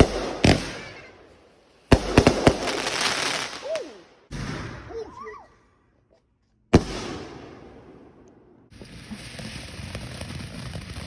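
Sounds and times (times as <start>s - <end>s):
fireworks crackling: 0.0s - 4.5s, 6.8s - 11.0s
fireworks bangs: 0.0s - 5.5s, 6.7s - 11.0s.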